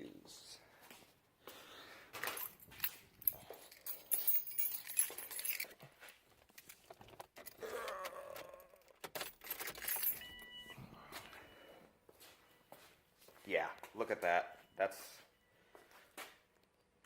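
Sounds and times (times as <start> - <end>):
car keys jangling: 2.2 - 5.9, 8.8 - 10.5.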